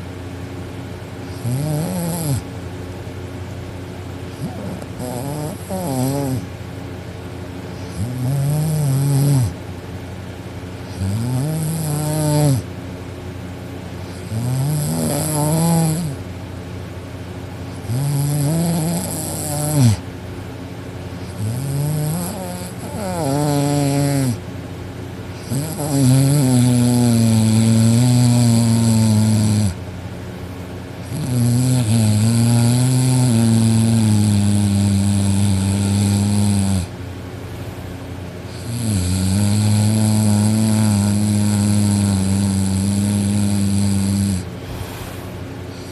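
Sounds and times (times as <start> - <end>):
girl snoring noisily: 1.3 - 2.4, 4.3 - 6.5, 7.8 - 9.6, 10.9 - 12.7, 14.0 - 16.2, 17.7 - 20.0, 21.2 - 24.4, 25.4 - 29.8, 31.1 - 36.9, 38.5 - 44.8.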